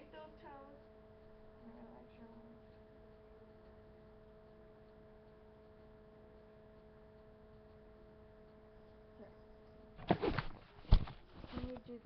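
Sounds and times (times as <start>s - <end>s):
faint steady hum: 0.0s - 12.0s.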